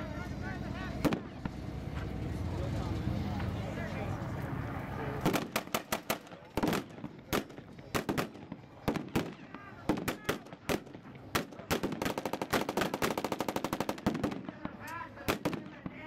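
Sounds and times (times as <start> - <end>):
rifle shots: 5.2 - 16.0
machine-gun burst: 8.9 - 14.4.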